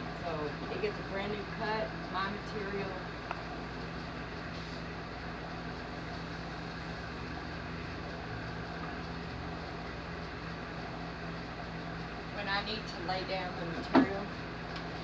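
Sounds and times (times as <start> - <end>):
fan motor humming: 0.0 - 15.0.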